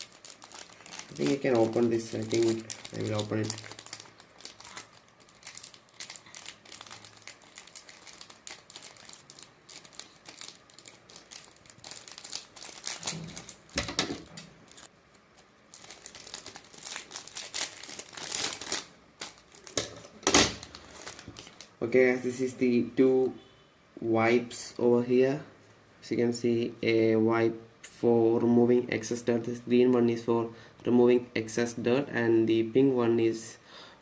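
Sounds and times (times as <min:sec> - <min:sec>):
packaging crinkling: 0:00.0 - 0:21.7.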